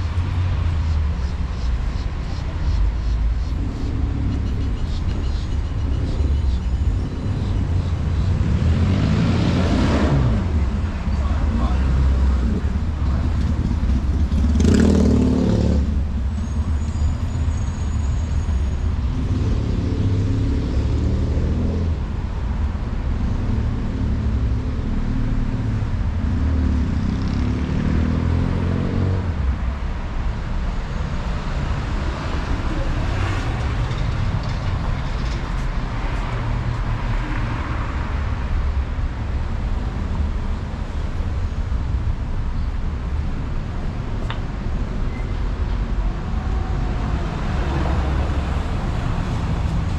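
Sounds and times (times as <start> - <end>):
car and truck engines passing: 0.0 - 49.9
low traffic rumble: 0.0 - 49.9
loud vehicle passing: 6.9 - 16.2, 23.7 - 29.4, 44.7 - 49.9.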